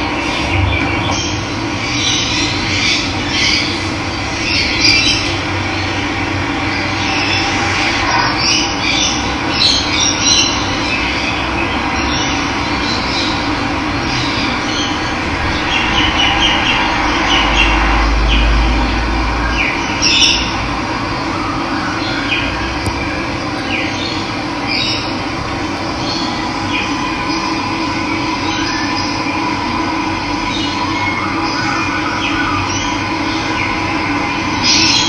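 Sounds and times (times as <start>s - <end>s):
birds chirping: 21.2s - 29.5s.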